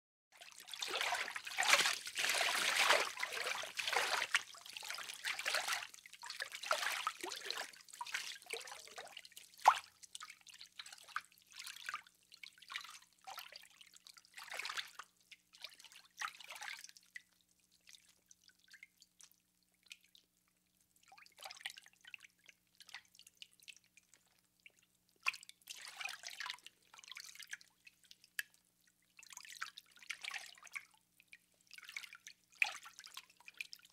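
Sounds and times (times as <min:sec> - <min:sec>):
bath water splashing: 0:00.7 - 0:05.8.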